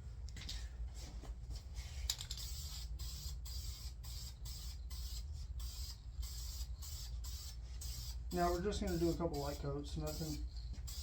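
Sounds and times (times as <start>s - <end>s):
spray paint hissing: 2.2s - 11.0s.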